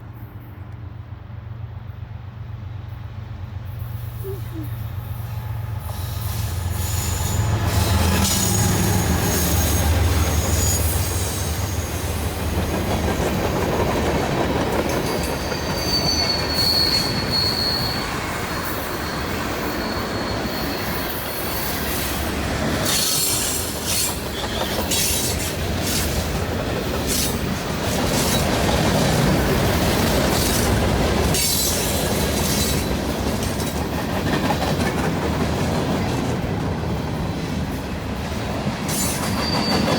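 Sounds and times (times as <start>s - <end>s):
diesel locomotive rumble: 0.0s - 39.9s
high-pitched wheel squeals: 5.9s - 11.9s, 15.2s - 21.8s, 39.0s - 39.9s
train cars clattering: 6.7s - 39.9s.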